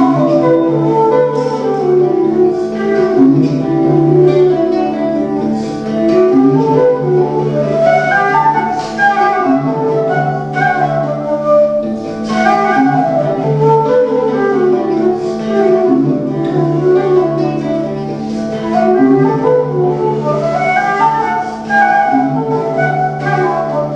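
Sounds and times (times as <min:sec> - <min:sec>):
folk flute melody: 0:00.0 - 0:23.9.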